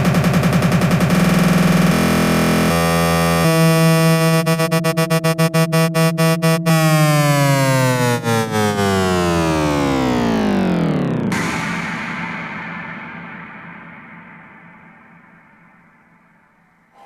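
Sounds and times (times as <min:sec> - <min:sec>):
synthesizer drone: 0:00.0 - 0:17.0.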